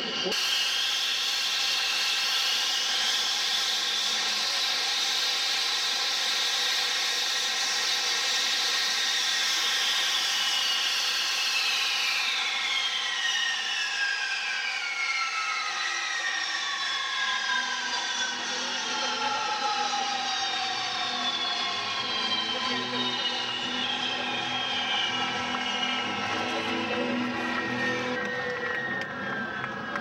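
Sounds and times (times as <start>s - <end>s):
jet engine turbine whine: 0.0s - 30.0s.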